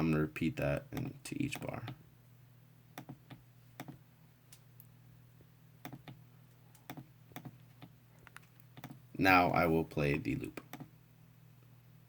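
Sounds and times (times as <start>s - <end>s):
low steady hum: 0.0s - 12.0s
computer keyboard clicking: 6.8s - 7.6s.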